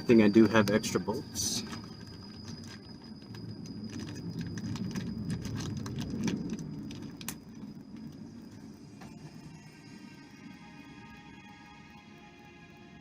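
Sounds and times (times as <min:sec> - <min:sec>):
small metal parts clinking: 0:00.3 - 0:07.6
low rumble: 0:01.0 - 0:12.2.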